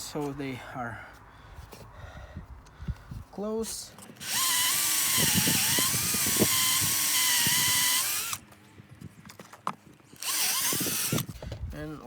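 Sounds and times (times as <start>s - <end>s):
electric drill boring into wood: 4.2s - 8.4s, 10.2s - 11.3s.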